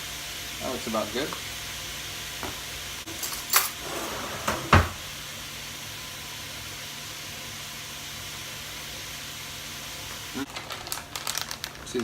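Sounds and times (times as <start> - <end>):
vegetables sizzling in oil: 0.0 - 12.0
kitchen knocks and clatters: 2.4 - 5.0.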